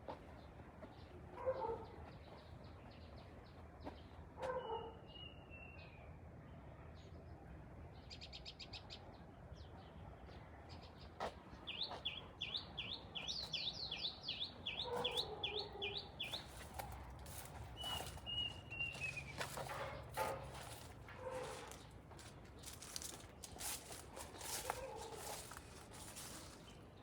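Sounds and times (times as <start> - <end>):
small birds chirping: 9.6 - 27.0.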